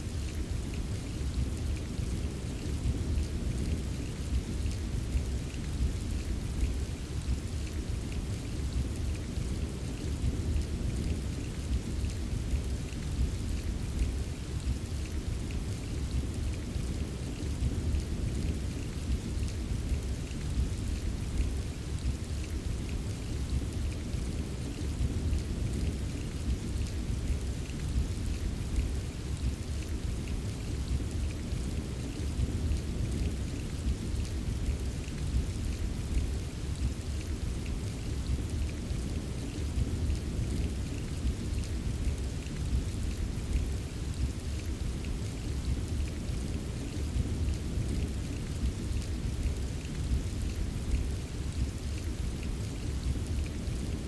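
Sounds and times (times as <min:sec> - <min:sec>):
heavy rain: 0:00.0 - 0:54.0.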